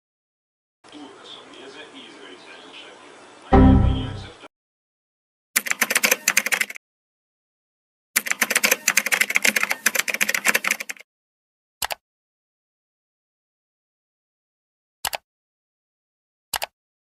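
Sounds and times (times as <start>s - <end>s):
rapid typing on keys: 5.6s - 6.8s, 8.2s - 11.0s.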